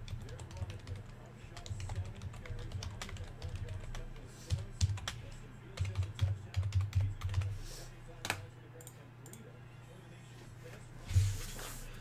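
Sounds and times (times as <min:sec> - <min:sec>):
typing on computer keyboard: 0:00.0 - 0:05.2, 0:05.8 - 0:07.5.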